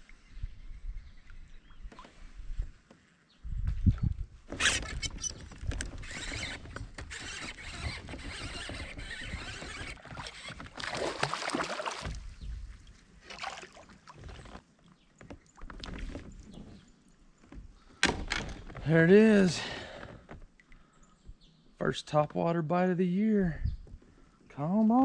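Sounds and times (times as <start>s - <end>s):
water splashing around a kayak: 4.5s - 18.1s.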